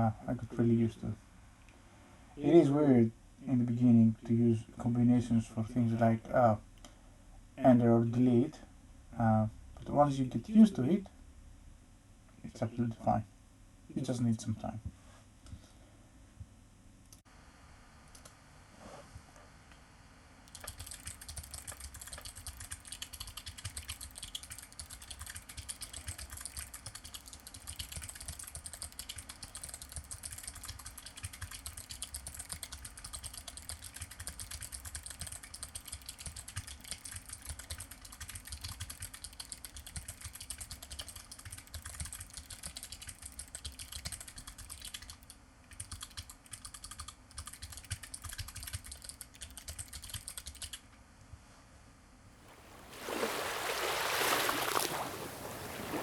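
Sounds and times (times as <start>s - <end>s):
fast clicky keyboard typing: 20.5s - 50.8s.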